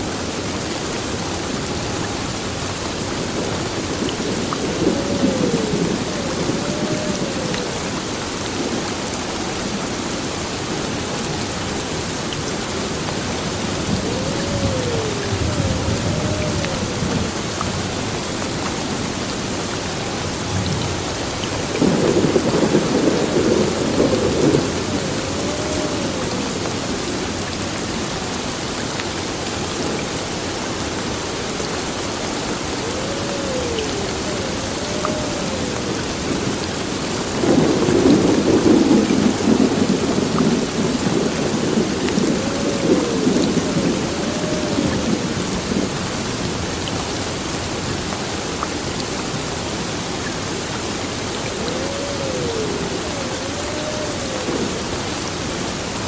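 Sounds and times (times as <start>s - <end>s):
heavy rain falling: 0.0s - 56.0s
thunder rolling: 3.4s - 8.0s, 13.5s - 18.1s, 20.0s - 27.3s, 37.3s - 46.0s, 51.5s - 55.6s.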